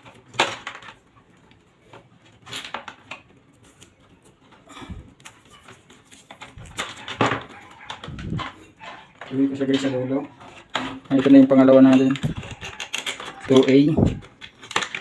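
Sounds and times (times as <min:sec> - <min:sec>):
wire and metal box clicking: 0:10.7 - 0:15.0.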